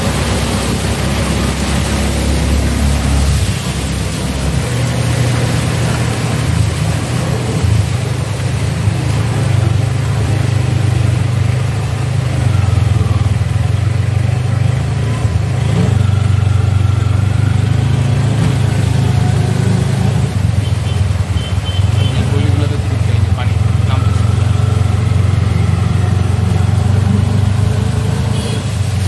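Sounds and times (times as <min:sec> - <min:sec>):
small engine droning: 0:22.1 - 0:28.6.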